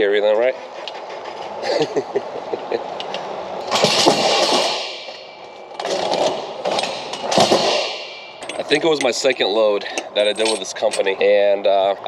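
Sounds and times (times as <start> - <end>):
metal bars rattling and clanking: 3.7 - 11.2.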